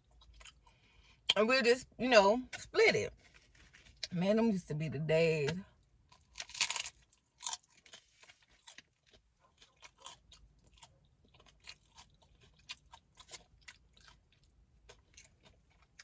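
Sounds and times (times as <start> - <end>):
crunchy taco chewing: 0.0 - 1.0, 2.6 - 4.1, 5.8 - 16.0.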